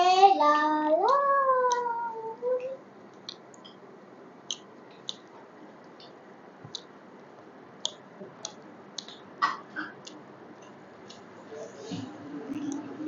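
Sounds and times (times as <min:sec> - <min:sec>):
mouth clicks and smacks chewing: 0:03.1 - 0:03.8, 0:04.5 - 0:05.3, 0:06.7 - 0:11.3.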